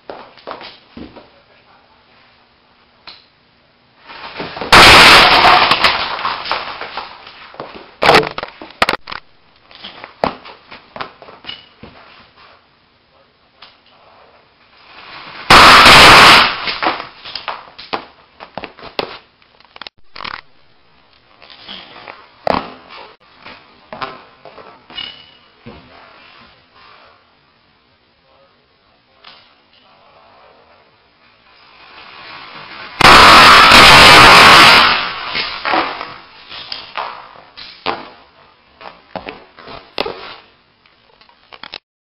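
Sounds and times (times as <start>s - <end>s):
airsoft grenade blast: 4.1s - 7.2s, 15.2s - 17.7s, 32.9s - 38.2s.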